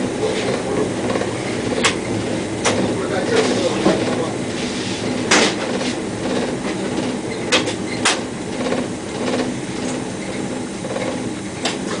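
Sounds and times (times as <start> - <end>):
electric train rumble and hum: 0.0 - 12.0
wheels clacking over rail joints: 5.0 - 12.0.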